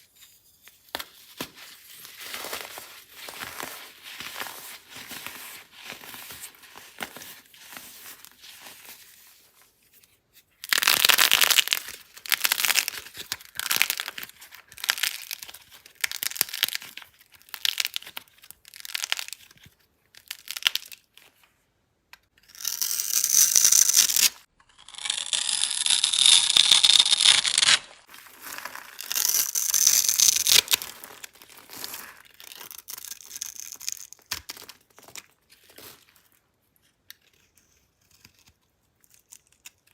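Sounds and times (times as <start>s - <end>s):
dry soap crunching and crackling: 10.6s - 21.3s, 25.1s - 39.9s.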